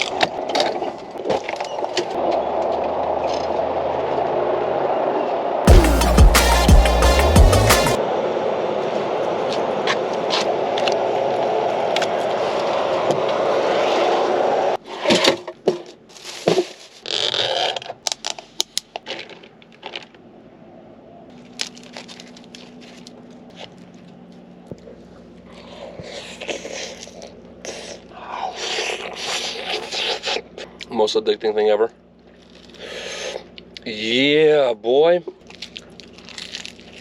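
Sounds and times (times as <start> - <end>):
utensil scraping food in container: 25.5 - 30.6.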